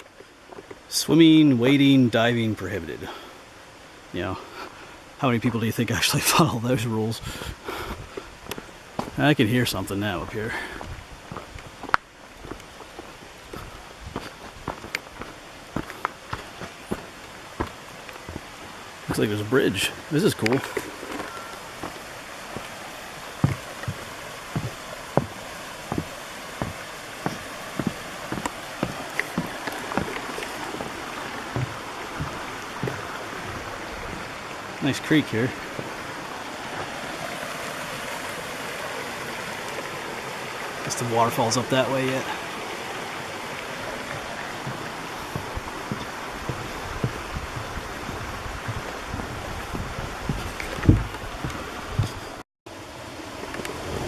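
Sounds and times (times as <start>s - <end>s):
creek rushing: 0.0s - 54.0s
footsteps on footbridge: 7.8s - 9.4s, 10.2s - 35.0s, 35.6s - 37.1s, 43.5s - 52.4s
low thumps: 23.4s - 34.3s, 44.1s - 52.4s.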